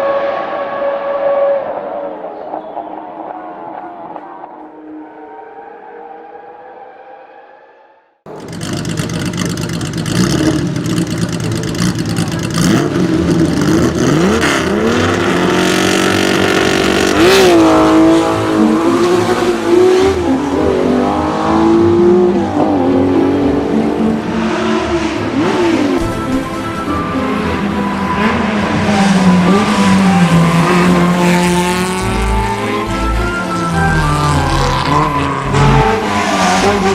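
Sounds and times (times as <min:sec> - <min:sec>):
car engine revving: 0:08.3 - 0:36.9.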